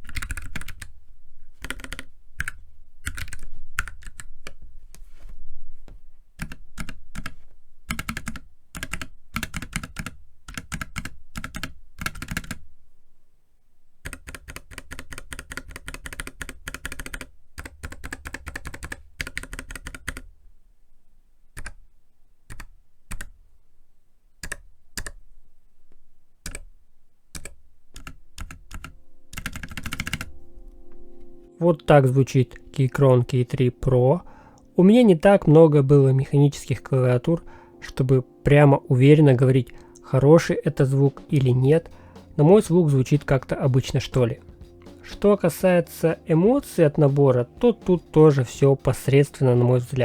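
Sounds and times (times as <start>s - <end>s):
mechanical keyboard typing: 0.0s - 1.0s, 1.6s - 4.6s, 6.4s - 12.6s, 14.0s - 20.3s, 21.5s - 21.8s, 22.5s - 23.4s, 24.4s - 25.2s, 26.4s - 26.7s, 27.3s - 30.4s.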